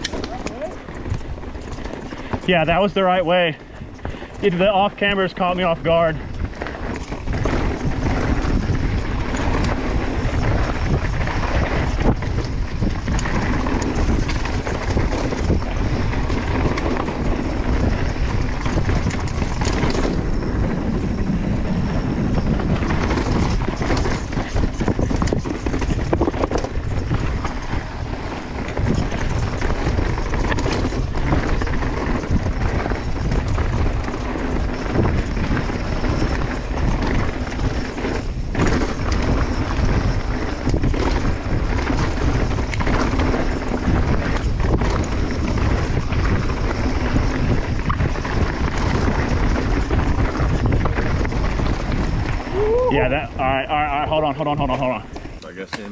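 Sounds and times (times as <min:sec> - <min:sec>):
bike knocking and rattling: 0:00.0 - 0:55.9
bike tyres clattering over rock: 0:00.0 - 0:55.9
wind buffeting microphone: 0:00.0 - 0:55.9.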